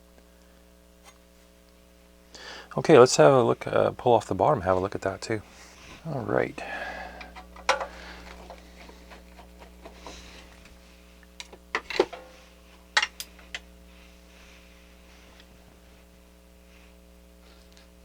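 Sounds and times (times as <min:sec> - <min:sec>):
faint steady hum: 0:00.0 - 0:18.0
clicks and knocks handling device: 0:07.2 - 0:10.0.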